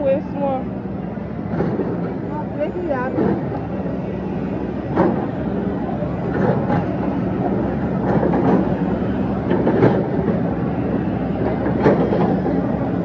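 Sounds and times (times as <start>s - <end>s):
heavy engine machinery rumbling: 0.0s - 13.0s
metallic clanks and knocks: 3.1s - 13.0s.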